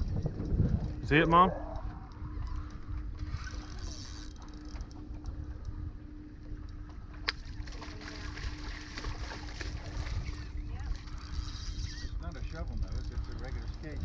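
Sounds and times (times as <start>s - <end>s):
wind on microphone: 0.0s - 4.3s, 8.0s - 14.0s
faint steady hum: 0.0s - 14.0s
water movement: 0.0s - 14.0s
small ticks: 11.0s - 14.0s.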